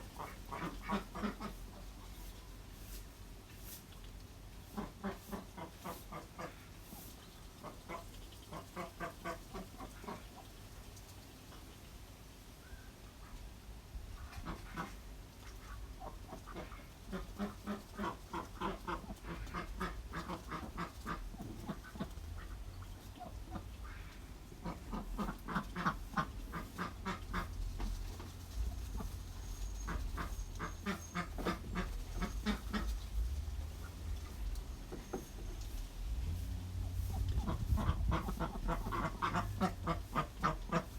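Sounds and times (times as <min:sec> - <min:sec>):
ducks quacking: 0:00.0 - 0:02.2, 0:04.6 - 0:07.0, 0:07.6 - 0:10.5, 0:14.2 - 0:35.8, 0:36.4 - 0:40.9
steady low rumble: 0:27.2 - 0:34.8, 0:35.5 - 0:40.7.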